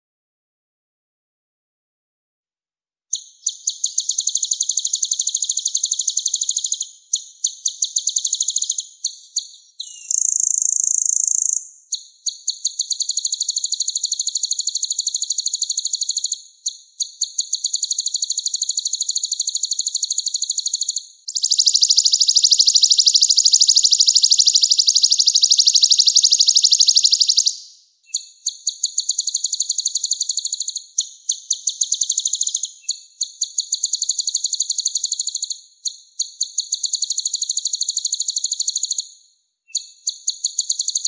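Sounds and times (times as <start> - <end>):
songbird high rolling trill: 3.1 - 35.4.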